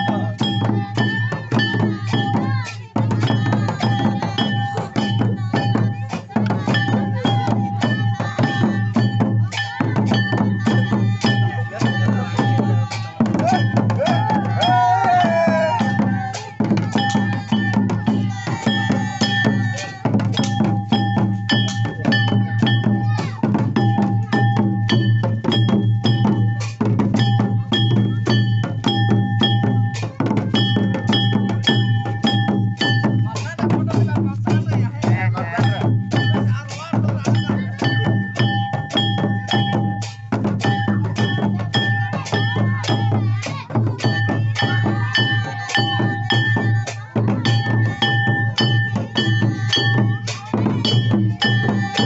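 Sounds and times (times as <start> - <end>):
folk drums fast beat: 0.0 - 52.0
repeating high ringing tone: 20.4 - 33.3, 37.4 - 43.4, 44.0 - 52.0.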